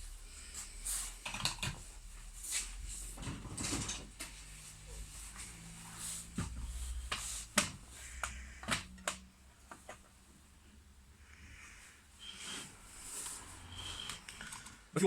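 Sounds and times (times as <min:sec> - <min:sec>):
laptop parts clicking and tapping: 0:07.1 - 0:10.1.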